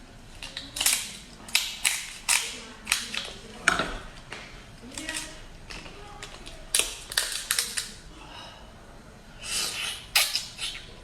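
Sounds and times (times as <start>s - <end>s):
seafood shells cracking: 6.4s - 8.0s.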